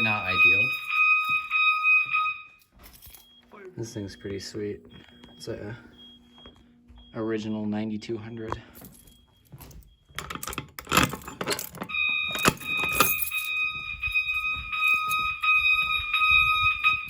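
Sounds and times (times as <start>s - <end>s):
fire alarm tone: 0.0s - 17.0s
rattling and clicking: 9.6s - 13.9s.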